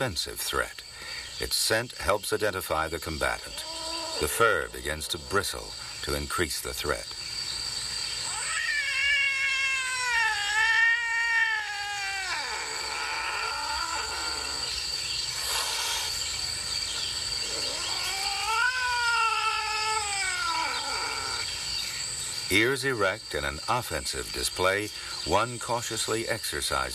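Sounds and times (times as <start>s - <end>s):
cat yowling: 3.6s - 4.2s, 8.2s - 14.8s, 17.5s - 21.5s.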